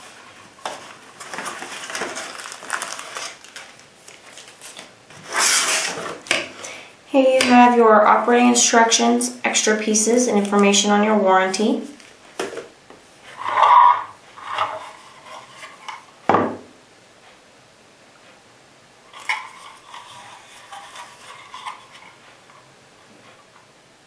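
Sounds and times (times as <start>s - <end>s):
paper rustling: 0.6s - 6.2s
plastic parts clattering: 1.2s - 4.8s.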